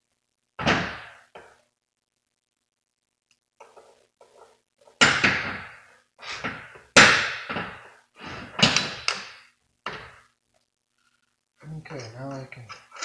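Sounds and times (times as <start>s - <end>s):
heavy knocks: 5.0s - 5.8s.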